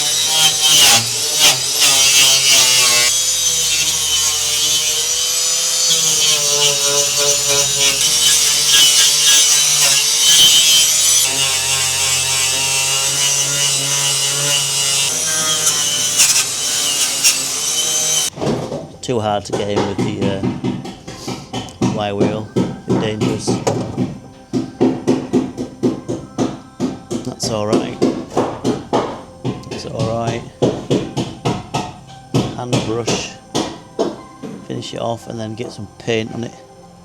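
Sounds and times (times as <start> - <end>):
wire wheel scratching metal: 0.0 - 18.3
angle grinder motor whine: 0.0 - 18.4.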